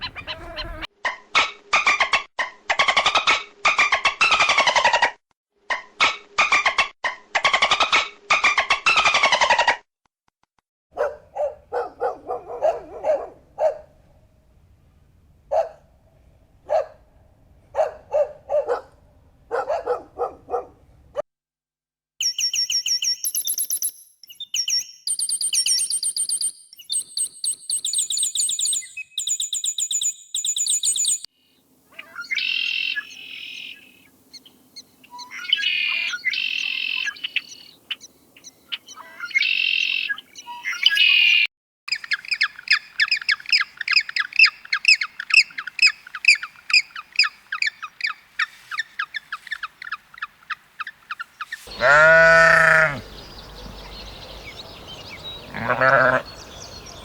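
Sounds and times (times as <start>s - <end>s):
bird twittering chirps: 0.0s - 0.8s, 22.2s - 31.3s, 32.0s - 57.0s
harsh bird calls: 0.0s - 0.9s, 31.9s - 57.0s
bark-like animal calls: 0.0s - 1.5s, 11.0s - 13.9s, 15.5s - 15.8s, 17.8s - 20.8s, 51.6s - 53.1s, 55.4s - 56.3s.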